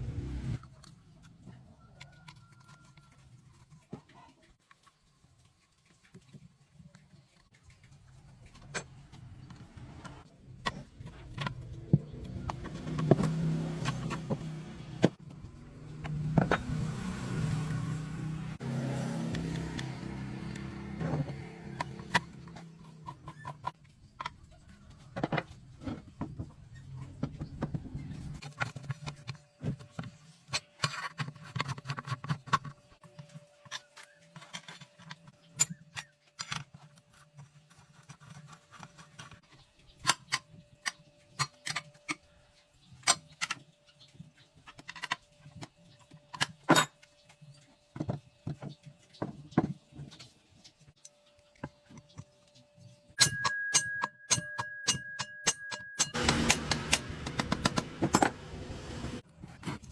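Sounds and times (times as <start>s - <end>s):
small motor humming: 12.0s - 22.8s
sharp clicks and knocks: 54.3s - 58.6s.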